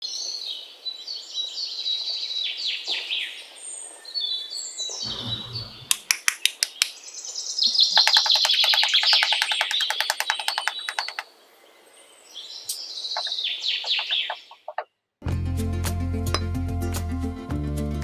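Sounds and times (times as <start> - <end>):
birds chirping: 0.0 - 15.0
low rumble: 5.1 - 5.9
sharp clicks: 5.1 - 7.0, 8.0 - 11.3.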